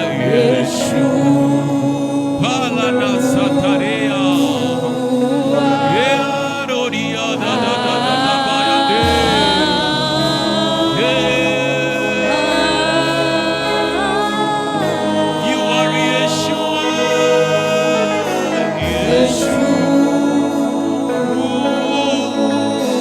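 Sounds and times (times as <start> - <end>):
person singing long held notes: 0.0 - 23.0
sustained accompaniment: 0.0 - 23.0
low bass: 9.0 - 14.1.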